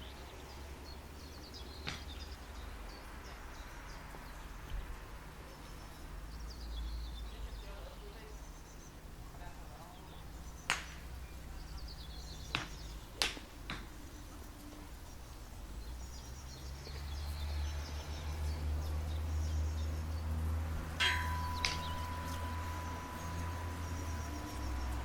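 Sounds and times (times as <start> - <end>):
low rumble: 20.1 - 25.0
bird or insect chirping: 21.0 - 25.0.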